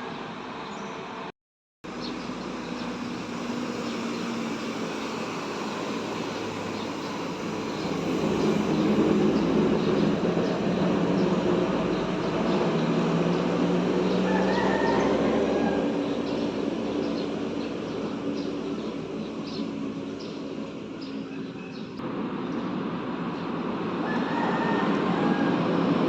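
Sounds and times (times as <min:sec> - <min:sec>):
bus diesel engine running: 0:01.8 - 0:22.0.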